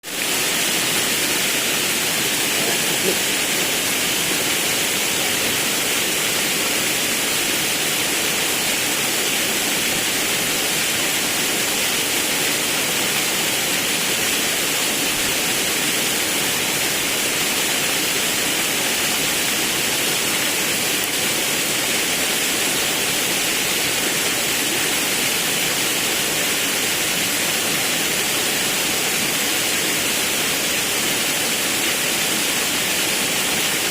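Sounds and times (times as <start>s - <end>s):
waterfall and river rushing: 0.0s - 33.9s.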